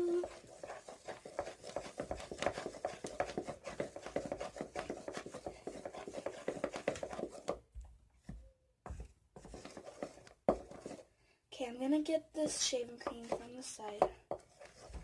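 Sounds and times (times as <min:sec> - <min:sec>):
utensil scraping a bowl: 0:00.0 - 0:07.6, 0:09.4 - 0:11.1, 0:12.4 - 0:15.0.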